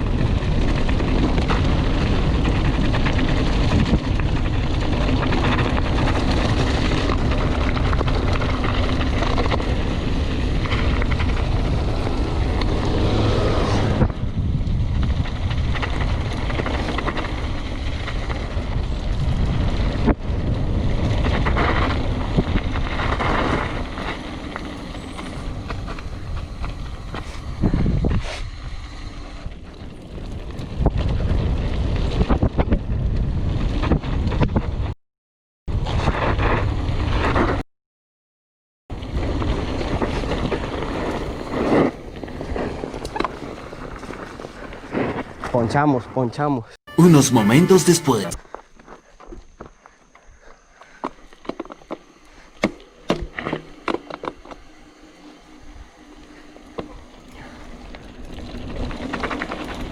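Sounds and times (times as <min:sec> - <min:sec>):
bike tyres on dirt and rock: 0:00.0 - 0:34.9, 0:38.9 - 0:46.0, 0:48.7 - 0:59.9
wind rushing over microphone: 0:09.9 - 0:16.4, 0:25.4 - 0:28.8.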